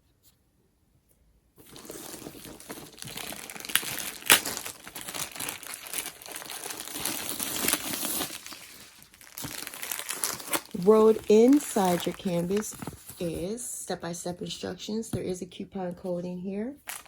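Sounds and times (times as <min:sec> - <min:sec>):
packaging crinkling: 0:01.6 - 0:13.6, 0:16.8 - 0:17.0.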